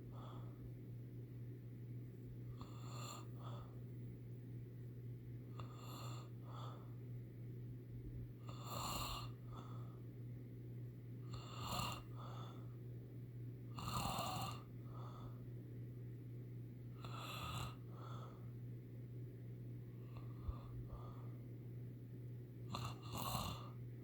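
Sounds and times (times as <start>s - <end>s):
person snoring: 2.6s - 3.5s, 8.4s - 9.4s, 11.3s - 12.3s, 13.8s - 14.7s, 17.0s - 17.9s, 22.7s - 23.8s.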